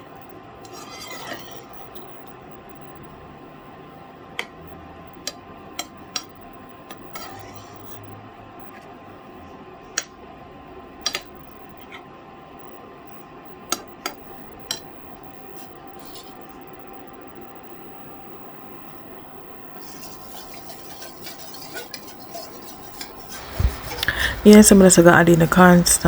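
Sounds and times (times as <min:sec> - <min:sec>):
faint hum: 0:23.0 - 0:26.0
spoon knocking against pot: 0:23.0 - 0:26.0.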